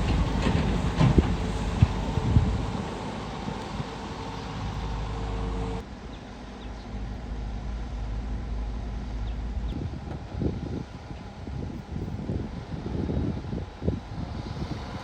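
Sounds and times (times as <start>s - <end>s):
excavator diesel engine running: 0.0s - 10.5s.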